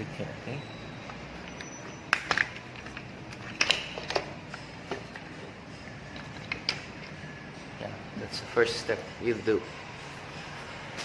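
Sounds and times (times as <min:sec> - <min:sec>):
plastic parts clicking and knocking: 0:01.5 - 0:05.4.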